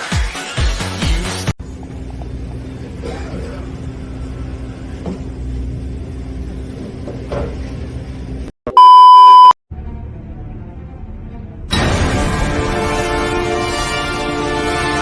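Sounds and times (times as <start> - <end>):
loud steady bleep tone: 8.7 - 9.6.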